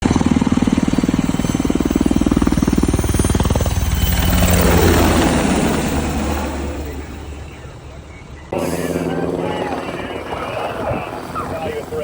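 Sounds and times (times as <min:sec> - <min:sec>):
helicopter rotor blades thudding: 0:08.5 - 0:12.0
rushing engine noise: 0:08.5 - 0:12.0.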